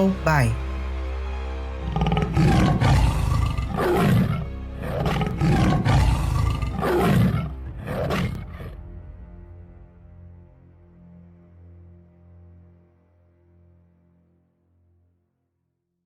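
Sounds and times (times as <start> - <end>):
background music: 0.0 - 14.8
tiger roars: 1.8 - 8.8.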